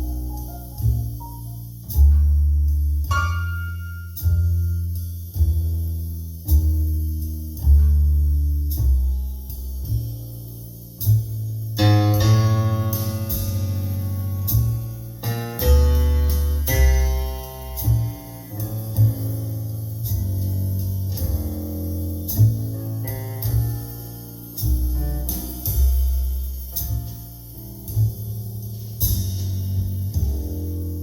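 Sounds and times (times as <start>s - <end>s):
piano chords: 0.0s - 5.4s, 11.8s - 31.0s
bass playing deep notes: 0.0s - 31.0s.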